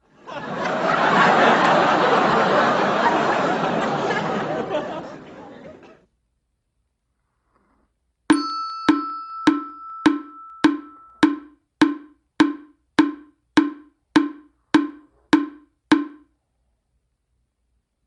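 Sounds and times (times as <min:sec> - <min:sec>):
ringing bell-like tone: 0:08.3 - 0:12.6
hollow wooden knocks: 0:08.9 - 0:16.3.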